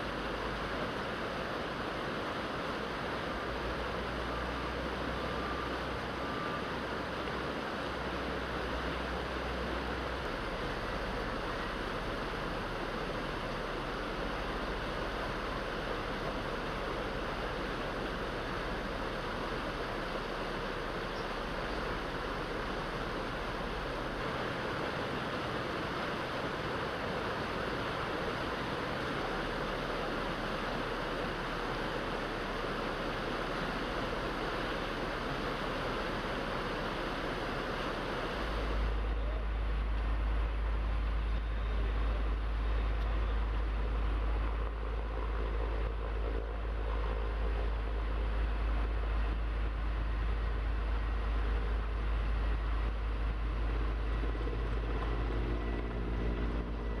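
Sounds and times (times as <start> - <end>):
floodwater rushing: 0.0 - 57.0.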